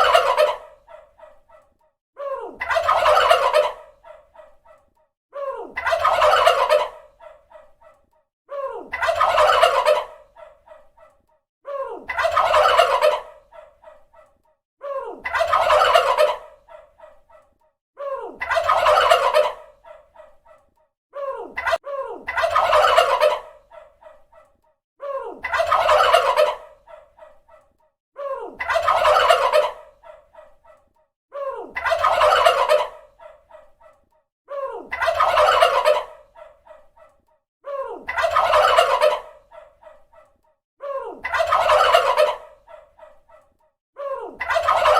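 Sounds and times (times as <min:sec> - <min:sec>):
turkey gobbling: 0:00.0 - 0:01.6, 0:02.6 - 0:04.8, 0:05.8 - 0:07.7, 0:08.9 - 0:11.1, 0:12.1 - 0:14.0, 0:15.2 - 0:17.2, 0:18.4 - 0:20.4, 0:21.6 - 0:24.5, 0:25.4 - 0:27.6, 0:28.6 - 0:30.8, 0:31.8 - 0:34.0, 0:34.9 - 0:37.1, 0:38.1 - 0:40.2, 0:41.2 - 0:43.4, 0:44.4 - 0:44.9.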